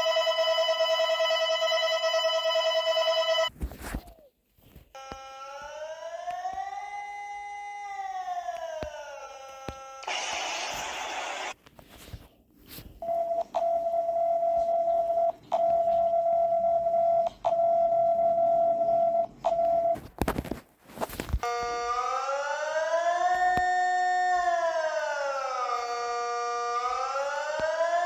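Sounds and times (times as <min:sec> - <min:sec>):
rising siren tone: 0:05.4 - 0:11.6
static: 0:10.0 - 0:11.7.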